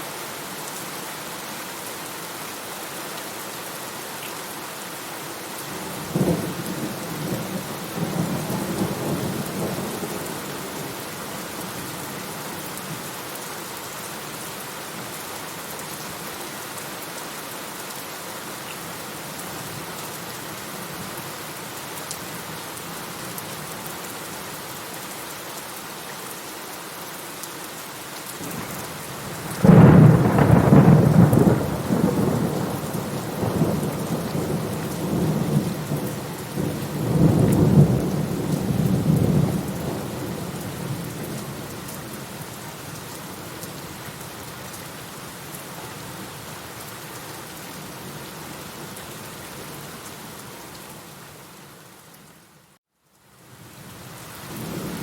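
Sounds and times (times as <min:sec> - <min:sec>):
steady rain: 0:00.0 - 0:55.0
rolling thunder: 0:29.4 - 0:40.3.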